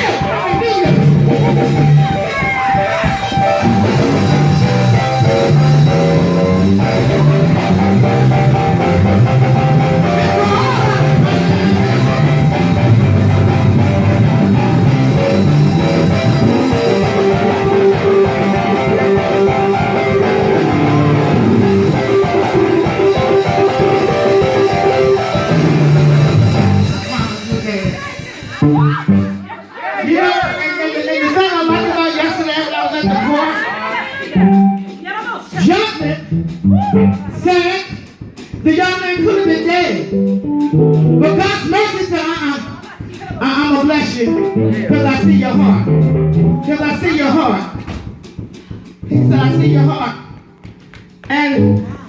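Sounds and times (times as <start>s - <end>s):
bass line: 0.0s - 29.5s, 31.2s - 34.8s, 35.5s - 48.3s, 49.0s - 50.4s, 51.3s - 52.0s
electric guitar: 0.0s - 29.5s, 44.2s - 46.7s
organ-like chords: 0.0s - 29.6s, 30.2s - 35.0s, 39.1s - 50.6s, 51.4s - 52.0s
drums: 0.0s - 52.0s.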